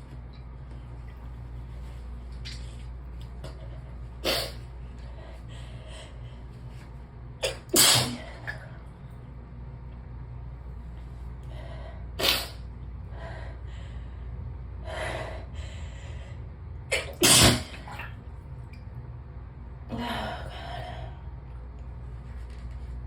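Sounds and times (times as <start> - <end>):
person sneezing: 4.2 - 4.6, 7.4 - 8.4, 12.2 - 12.6, 16.9 - 17.8
person breathing: 5.0 - 6.5, 13.1 - 16.5.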